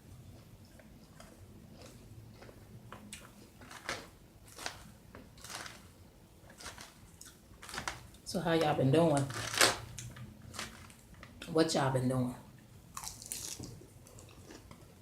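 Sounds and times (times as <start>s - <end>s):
chewing crunchy food: 0.0s - 8.2s, 12.9s - 15.0s.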